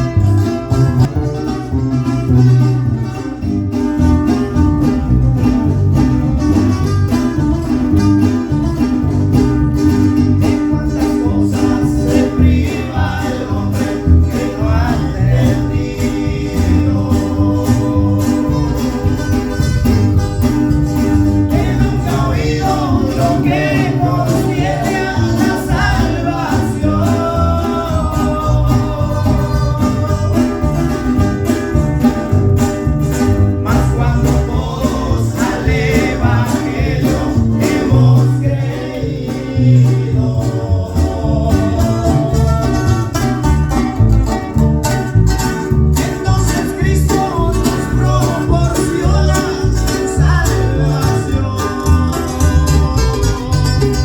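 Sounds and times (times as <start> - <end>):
bass: 0.0 - 54.0
guitar picking melody lines: 0.0 - 54.0
strummed rhythm guitar: 0.0 - 54.0.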